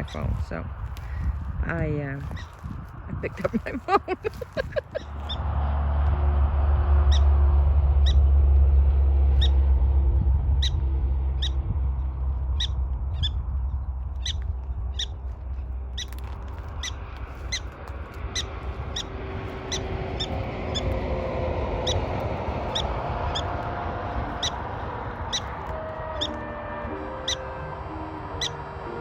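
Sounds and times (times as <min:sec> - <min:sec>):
low wind rumble: 0:00.0 - 0:29.0
prairie dogs chirping barks: 0:02.2 - 0:02.6, 0:03.2 - 0:05.4, 0:11.4 - 0:11.7, 0:12.5 - 0:28.9.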